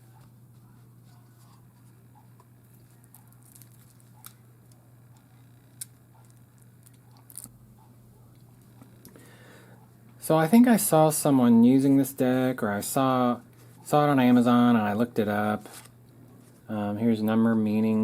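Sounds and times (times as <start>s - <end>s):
steady low hum: 0.0s - 18.0s
cards and packaging rustling: 0.1s - 7.5s.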